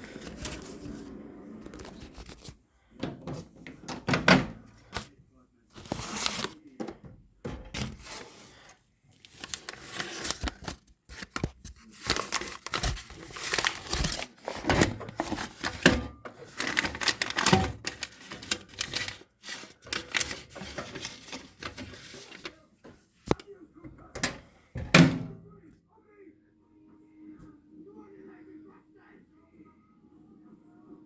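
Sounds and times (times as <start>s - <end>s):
popcorn popping: 10.1s - 22.4s.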